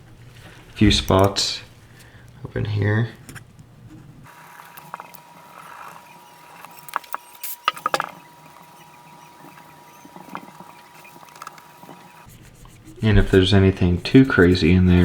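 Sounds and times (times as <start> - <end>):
pick scraping metal: 3.2 - 15.0.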